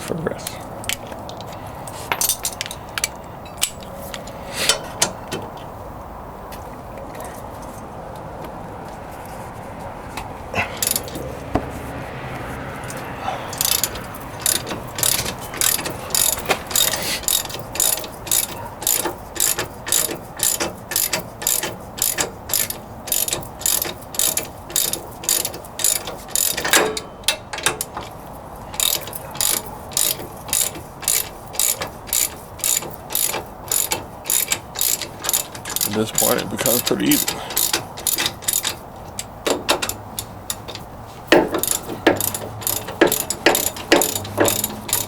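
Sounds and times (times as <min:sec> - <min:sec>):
socket ratchet clicking: 0:10.8 - 0:11.2, 0:13.6 - 0:28.2, 0:28.8 - 0:45.0.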